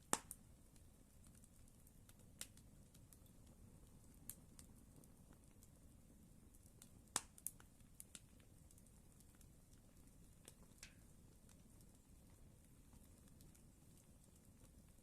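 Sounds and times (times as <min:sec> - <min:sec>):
campfire crackling and popping: 0:00.0 - 0:15.0.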